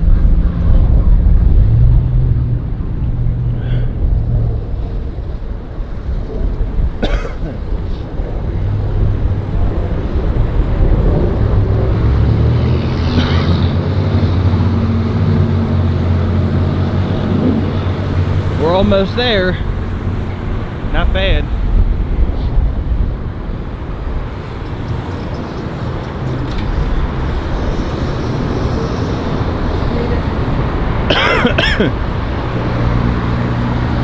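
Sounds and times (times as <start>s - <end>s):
road traffic hum: 0.0s - 34.0s
wind buffeting microphone: 0.0s - 34.0s.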